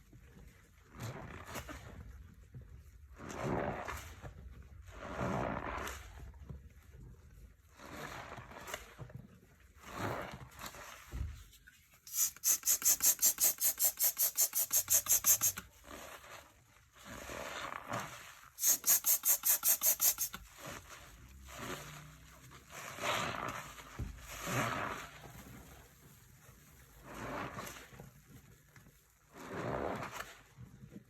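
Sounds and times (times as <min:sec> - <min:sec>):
rhythmic squelching: 0:12.1 - 0:15.6, 0:18.6 - 0:20.4
wet swishing of lather: 0:12.1 - 0:15.6, 0:18.6 - 0:20.5.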